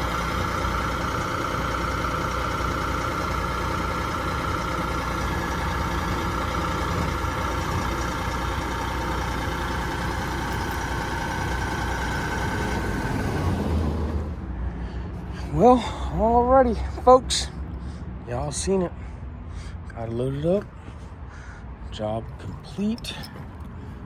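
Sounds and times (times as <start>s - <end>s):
stump grinder engine running: 0.0s - 14.4s.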